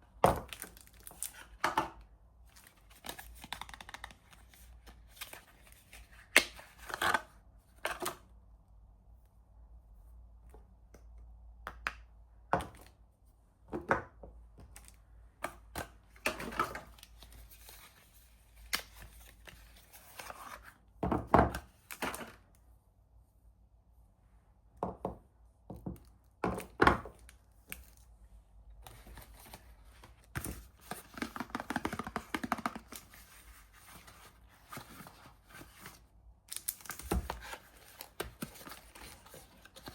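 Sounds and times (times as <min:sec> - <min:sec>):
knocks and taps of boxes: 0:31.0 - 0:33.0.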